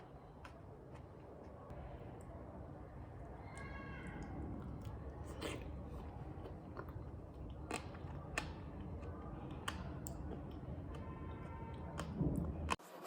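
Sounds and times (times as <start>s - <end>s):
chewing crunches: 3.6s - 12.8s.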